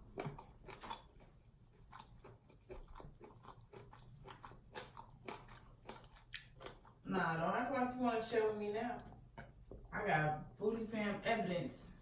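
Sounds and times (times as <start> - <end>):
person chewing fried food: 0.0 - 7.1.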